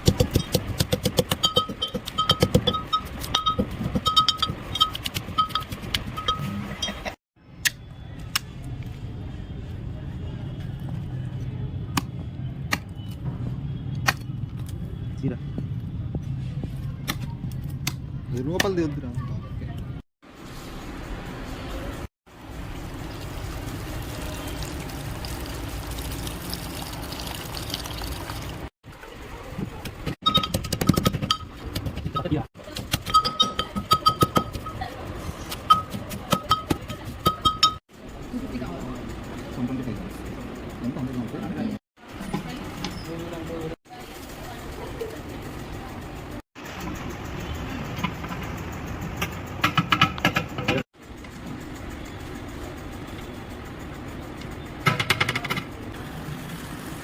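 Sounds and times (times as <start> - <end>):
metal utensil clinking metal vessel: 1.2 - 7.1
liquid pouring: 22.7 - 28.7.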